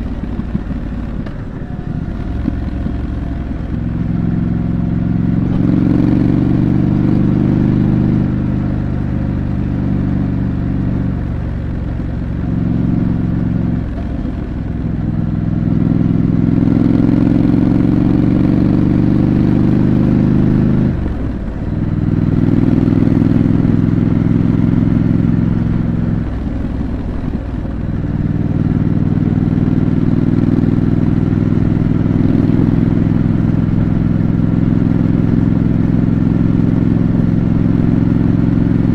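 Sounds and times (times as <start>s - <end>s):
motorcycle engine exhaust: 0.0s - 38.9s.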